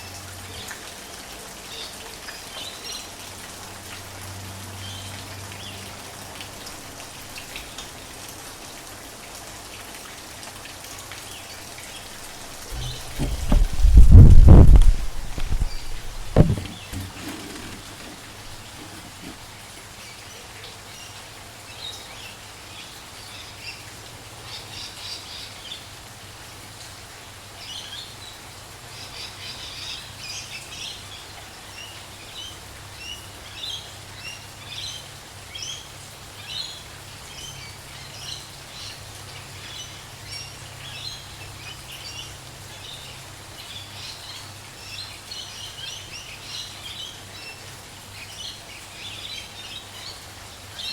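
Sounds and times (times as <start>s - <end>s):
light rain hiss: 0.0s - 50.9s
small birds chirping: 11.4s - 20.3s
loud thump: 12.7s - 17.4s.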